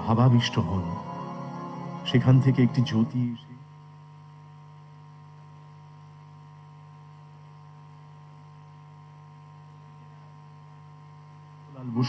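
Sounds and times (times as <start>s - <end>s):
electrical mains hum: 0.0s - 12.0s.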